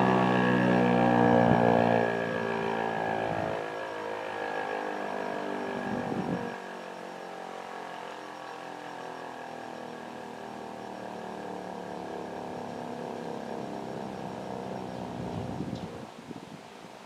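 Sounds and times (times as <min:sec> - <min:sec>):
wind buffeting microphone: 0:00.0 - 0:03.8, 0:05.7 - 0:06.6, 0:12.3 - 0:16.7
siren winding down: 0:00.0 - 0:16.0.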